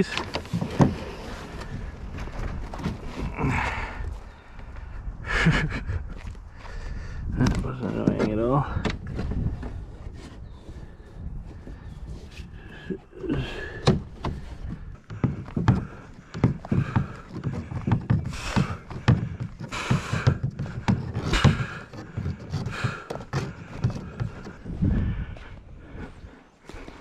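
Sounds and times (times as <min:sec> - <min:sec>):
fishing gear knocking and rustling: 0:00.0 - 0:03.6, 0:11.6 - 0:25.3.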